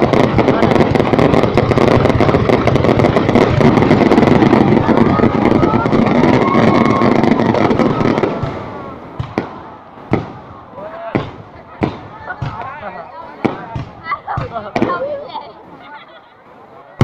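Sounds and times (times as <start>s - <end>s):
fireworks crackling bangs: 0.0s - 17.0s.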